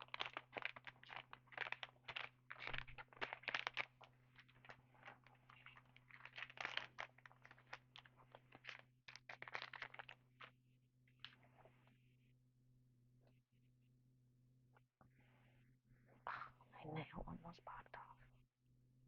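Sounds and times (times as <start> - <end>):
plastic card packs crinkling: 0.0 - 10.5.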